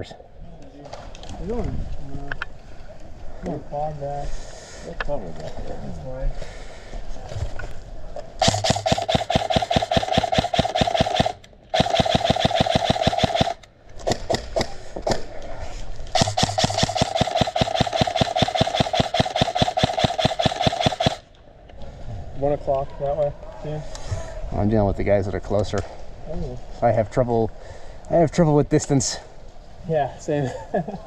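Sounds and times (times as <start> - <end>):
gun motor whining: 8.4 - 13.7, 16.2 - 21.2
airsoft gun firing: 8.4 - 14.8, 16.2 - 21.3.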